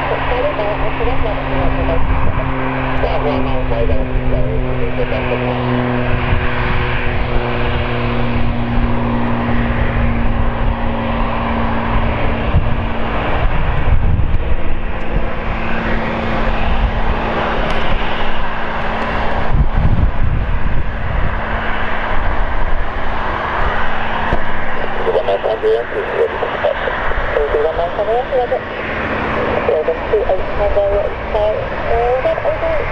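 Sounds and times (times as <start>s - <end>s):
jet engines roaring: 0.0s - 32.9s.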